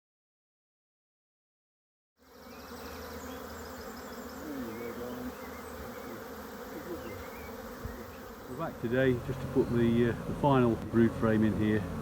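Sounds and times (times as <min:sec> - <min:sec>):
honeybees buzzing: 0:02.2 - 0:12.0.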